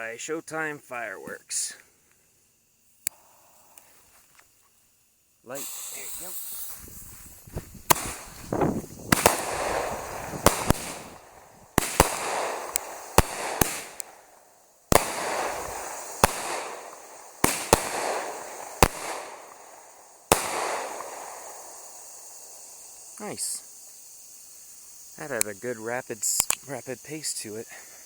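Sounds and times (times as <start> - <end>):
firework firing sharp bangs: 5.6 - 23.8.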